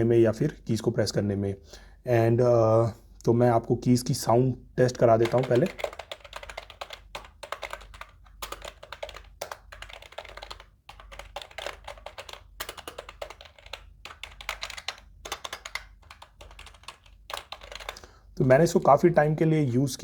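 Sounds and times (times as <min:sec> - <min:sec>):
clicking keyboard keystrokes: 0:05.2 - 0:18.0.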